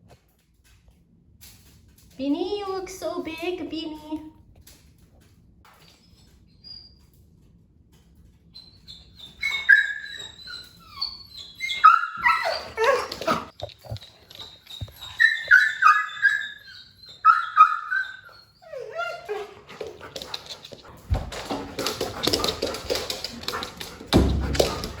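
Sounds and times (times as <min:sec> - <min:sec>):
dog whining and yipping: 0:08.6 - 0:25.0
thud: 0:24.1 - 0:25.0.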